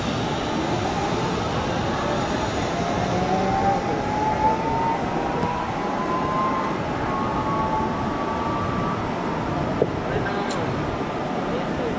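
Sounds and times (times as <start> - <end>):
zip-line pulleys whirring on cable: 0.0 - 8.0
steady rushing noise: 0.0 - 11.9.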